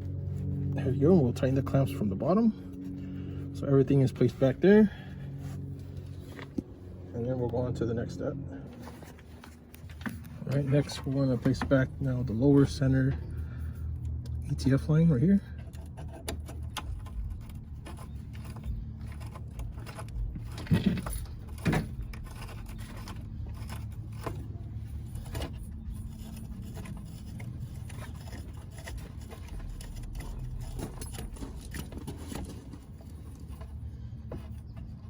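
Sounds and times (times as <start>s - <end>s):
steady low hum: 0.0s - 35.0s
metal parts clicking and scraping: 8.7s - 35.0s.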